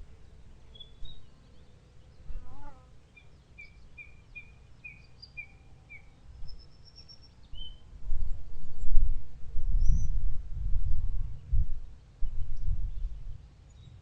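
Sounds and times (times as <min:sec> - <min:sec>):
songbirds singing: 0:00.0 - 0:10.2, 0:11.3 - 0:14.0.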